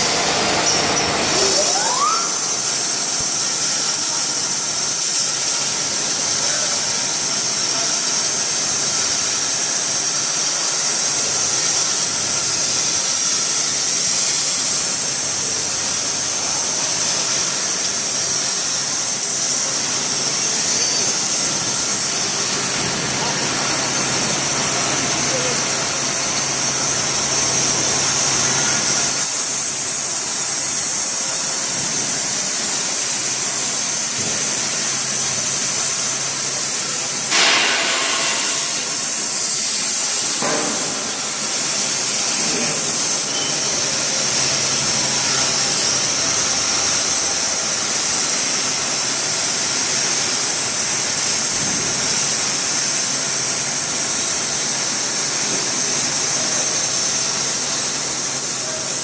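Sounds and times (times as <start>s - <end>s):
sawmill motor hissing: 0.1s - 59.0s
sharp knock: 37.3s - 39.0s, 40.4s - 41.1s.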